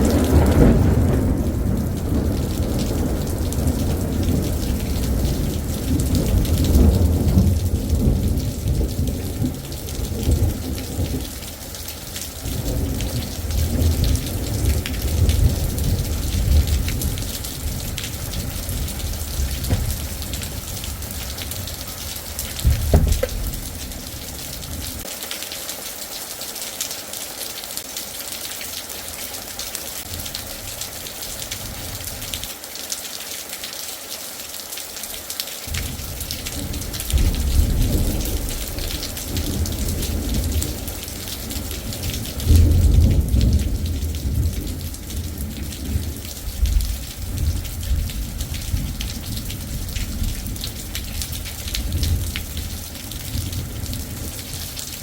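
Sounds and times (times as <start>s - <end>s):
rolling thunder: 0.0s - 11.3s, 12.4s - 25.1s, 35.7s - 50.6s
steady rain falling: 0.0s - 55.0s.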